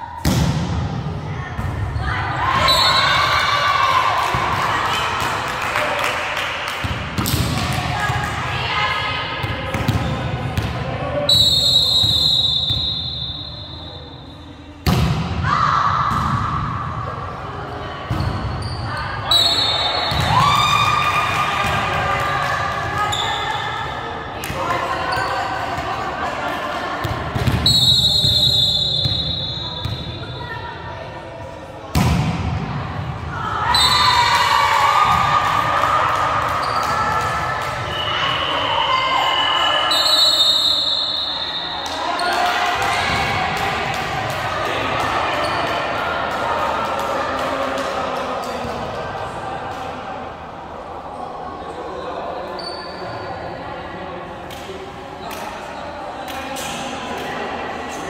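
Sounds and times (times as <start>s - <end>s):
crowd shouting in echoing hall: 0.0s - 31.2s, 32.0s - 58.0s
referee's whistle blast: 11.3s - 14.4s, 27.6s - 30.2s, 37.9s - 41.8s.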